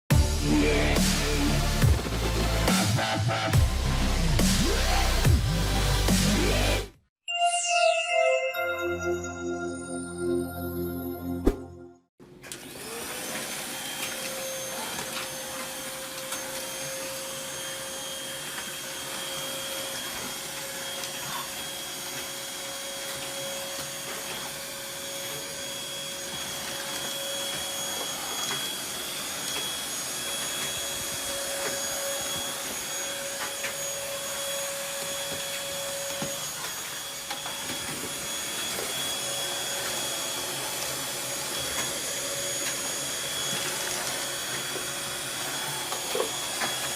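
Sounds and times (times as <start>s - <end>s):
vacuum cleaner motor whine: 12.4s - 46.9s.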